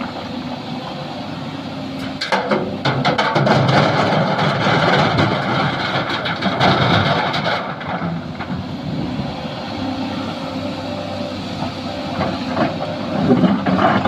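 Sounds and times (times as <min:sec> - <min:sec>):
excavator diesel engine: 0:00.0 - 0:14.0
rattling clatter: 0:02.2 - 0:08.6.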